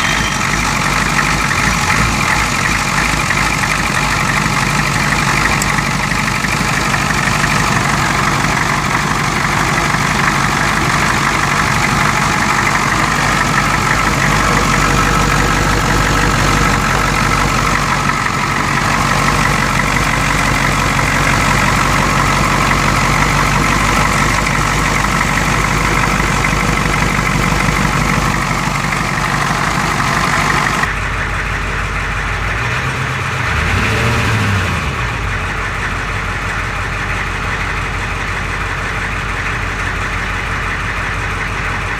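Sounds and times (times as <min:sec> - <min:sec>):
diesel engine idling with knock: 0:00.0 - 0:41.9.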